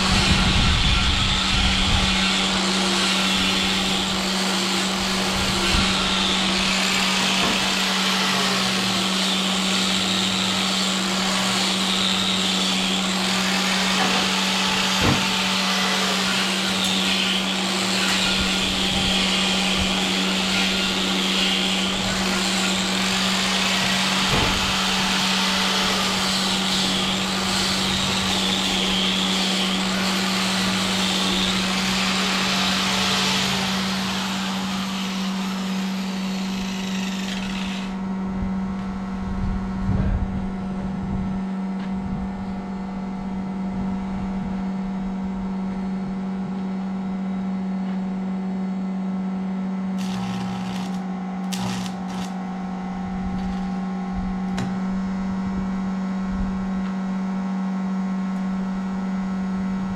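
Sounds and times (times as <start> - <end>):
machine humming and hissing: 0.0 - 38.2, 50.0 - 56.2.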